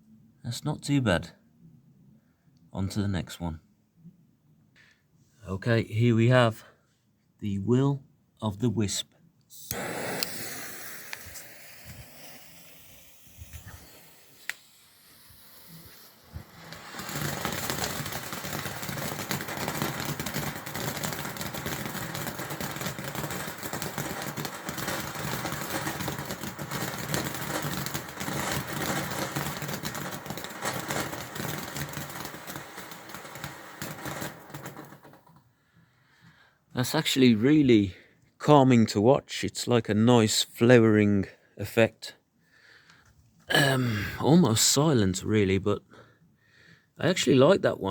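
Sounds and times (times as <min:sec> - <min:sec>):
firework fountain hissing and crackling: 0:09.6 - 0:35.4
sharp crack: 0:09.6 - 0:35.4.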